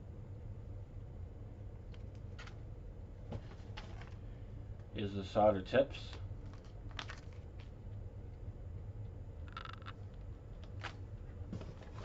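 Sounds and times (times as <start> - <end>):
steady low hum: 0.0 - 12.0
packaging rustling: 6.4 - 7.5.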